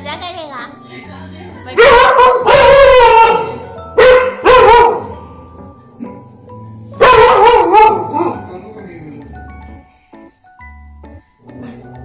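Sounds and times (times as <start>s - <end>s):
faint background music: 0.0s - 12.0s
dog barking: 1.8s - 5.2s, 7.0s - 8.4s.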